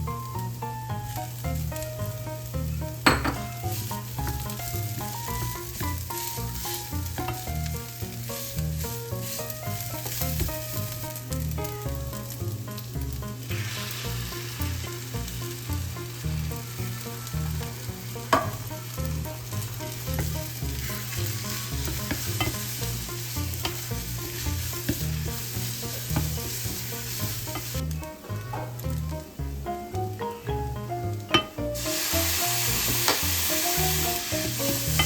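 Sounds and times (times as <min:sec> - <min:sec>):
food sizzling in a pan: 0:00.0 - 0:35.0.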